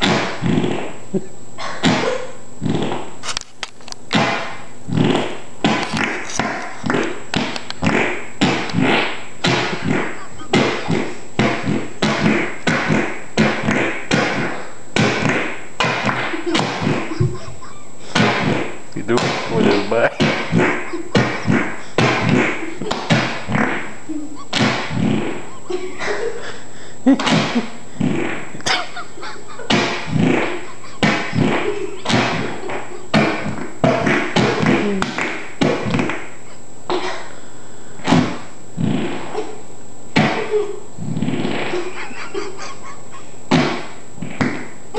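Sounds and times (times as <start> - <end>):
fart-like skin squelches on floor: 0.0 - 1.0, 2.6 - 3.6, 4.9 - 17.1, 24.6 - 25.5, 28.0 - 28.7, 29.7 - 36.3, 38.2 - 39.5, 41.0 - 41.9.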